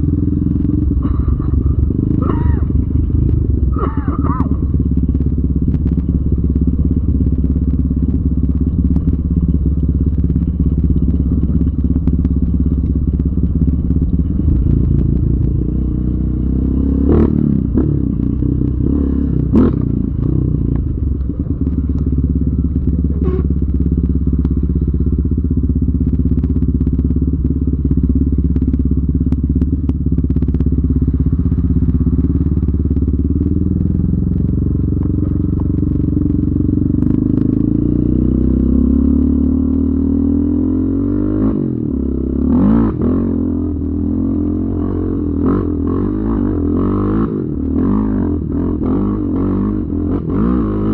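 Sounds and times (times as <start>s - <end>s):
atv engine running: 0.0s - 50.9s.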